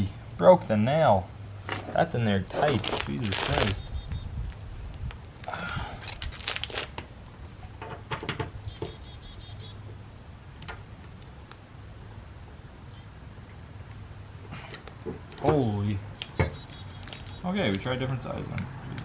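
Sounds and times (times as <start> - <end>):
metal hand tools clinking: 2.5 - 3.8, 6.0 - 7.0, 16.6 - 19.0.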